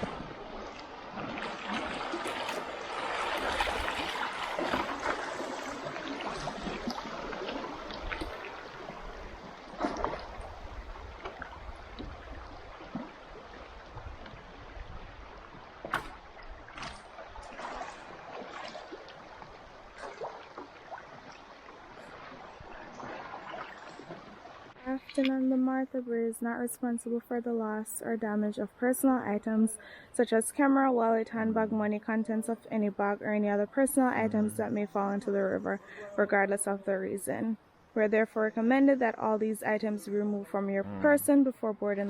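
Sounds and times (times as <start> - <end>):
river water splashing and trickling: 0.0 - 26.1.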